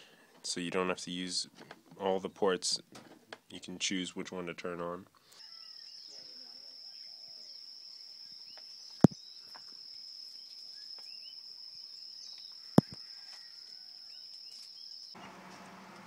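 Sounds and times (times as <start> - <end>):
crickets droning: 5.4 - 15.2
short insect chirps: 5.4 - 15.2.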